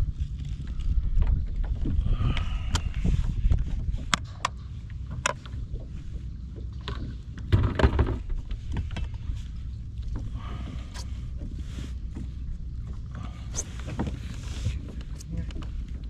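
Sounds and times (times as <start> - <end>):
wind rumble on microphone: 0.0 - 16.0
kayak handling clicks and knocks: 0.4 - 5.8, 6.7 - 9.4.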